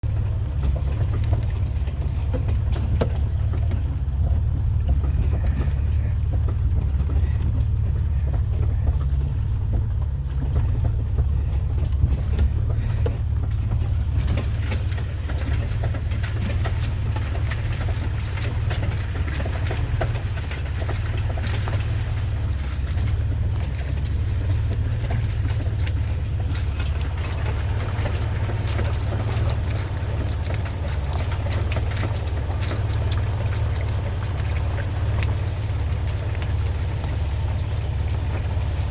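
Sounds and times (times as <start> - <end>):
rain ticking on wet road: 0.0 - 38.9
vehicle engine and tyres rumbling: 0.0 - 38.9.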